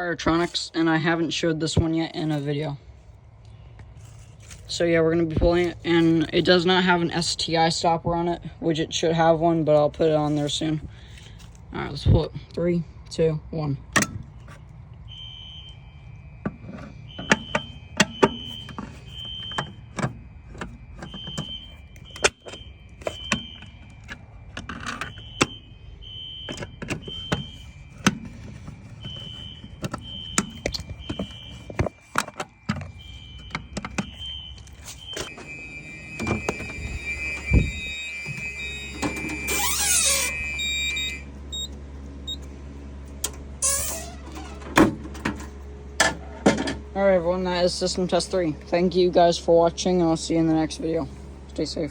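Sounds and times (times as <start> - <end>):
fire alarm horn beeps: 15.0 - 41.7, 43.6 - 44.6
steady alarm tone: 15.0 - 41.7
harsh alarm tone: 15.1 - 41.7, 43.6 - 44.6.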